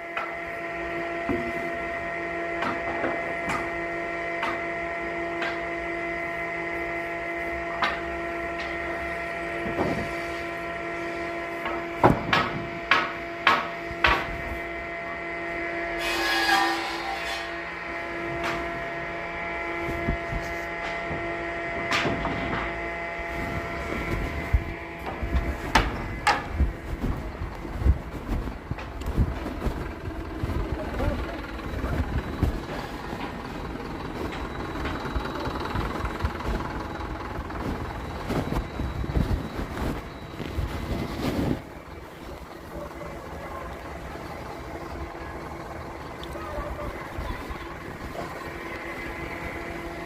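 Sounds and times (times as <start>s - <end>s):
sawmill machinery humming: 0.0s - 50.0s
sharp wooden knocks: 11.6s - 14.4s.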